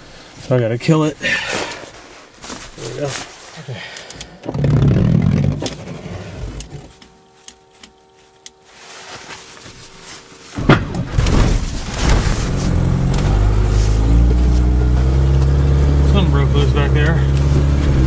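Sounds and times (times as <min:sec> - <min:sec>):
engine cranking and running: 0:04.1 - 0:07.1, 0:11.6 - 0:18.0
engine shutting off: 0:04.4 - 0:07.4, 0:11.6 - 0:18.0.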